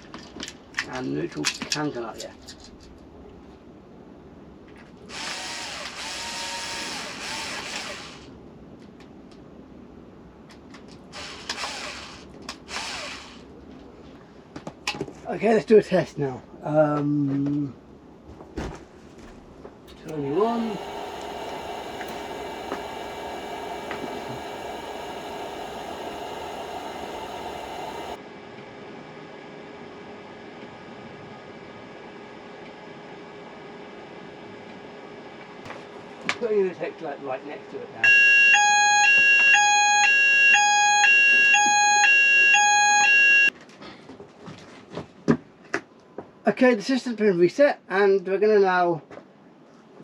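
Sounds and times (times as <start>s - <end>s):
smoke machine hissing buzz: 19.9s - 28.2s
two-tone fire alarm: 38.0s - 43.5s.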